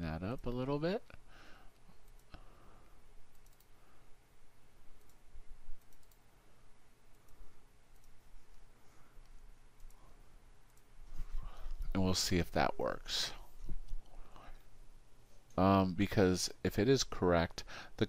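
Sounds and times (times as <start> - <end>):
faint low hum: 0.0 - 18.0
keyboard and mouse clicks: 2.0 - 2.4, 3.3 - 3.8, 5.0 - 6.2, 7.1 - 8.6.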